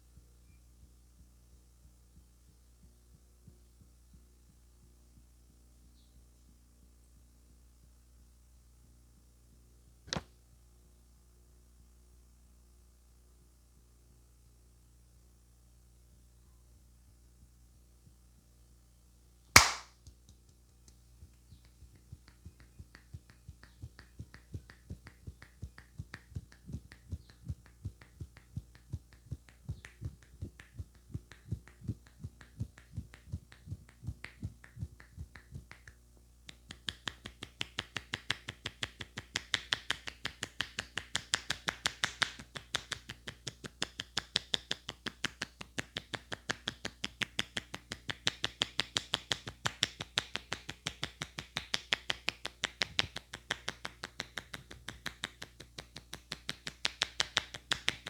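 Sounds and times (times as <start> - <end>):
hands thumping head: 19.6 - 19.9
hands slapping head: 19.6 - 21.0, 21.6 - 35.9, 36.5 - 58.0.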